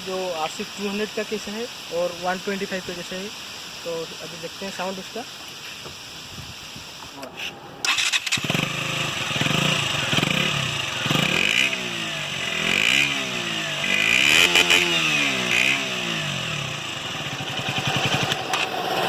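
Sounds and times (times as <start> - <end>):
motorcycle engine revving: 7.5 - 19.0.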